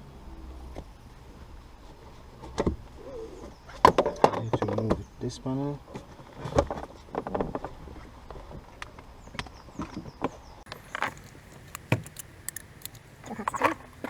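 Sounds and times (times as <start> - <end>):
trim panel clicks and knocks: 10.7 - 14.0.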